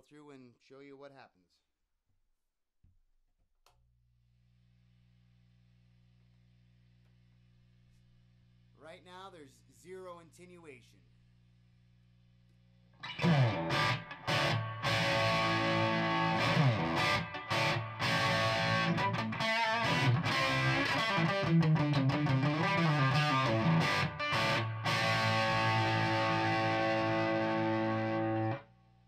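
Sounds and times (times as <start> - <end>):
electric guitar through amplifier: 12.9 - 29.0.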